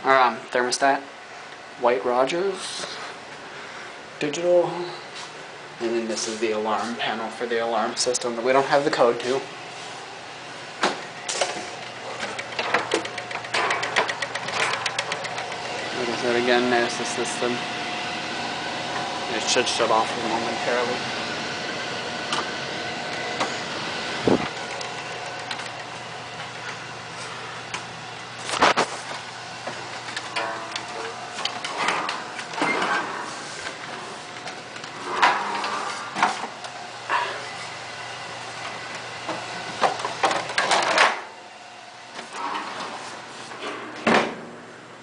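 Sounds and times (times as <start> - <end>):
air conditioning rush of air: 0.0 - 45.0
clicks: 11.3 - 15.9, 24.4 - 25.9.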